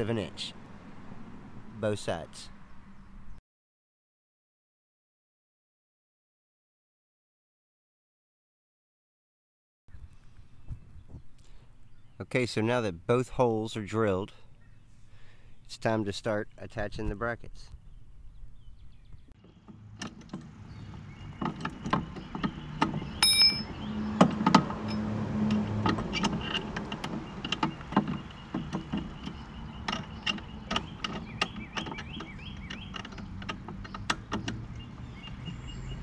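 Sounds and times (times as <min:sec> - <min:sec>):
metal clinks and knocks: 0:21.4 - 0:25.1.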